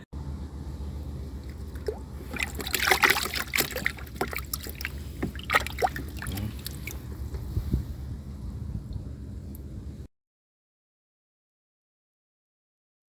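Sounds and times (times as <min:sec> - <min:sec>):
low wind rumble: 0:00.0 - 0:10.1
water splashing and sloshing: 0:00.9 - 0:08.0.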